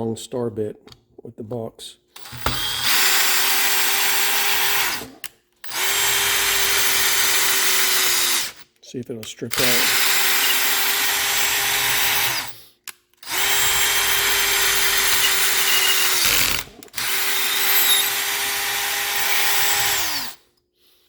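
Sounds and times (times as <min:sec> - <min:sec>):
power drill motor whine: 0:02.2 - 0:05.1, 0:05.7 - 0:08.6, 0:09.8 - 0:12.6, 0:13.3 - 0:20.4.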